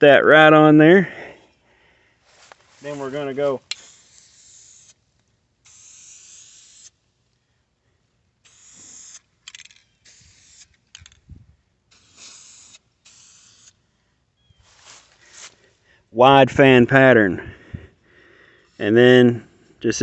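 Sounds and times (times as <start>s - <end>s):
spray paint can hissing: 3.7s - 7.0s, 8.4s - 11.2s, 11.9s - 13.8s, 18.6s - 18.9s.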